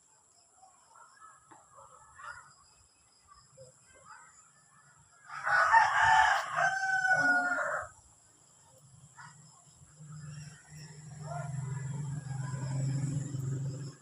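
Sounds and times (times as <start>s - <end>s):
rooster crowing: 5.3s - 8.0s.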